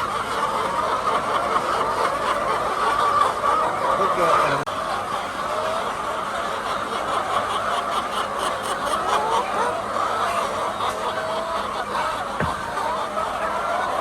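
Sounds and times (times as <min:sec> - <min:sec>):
hens clucking: 0:00.0 - 0:14.0
low knock: 0:12.4 - 0:13.0.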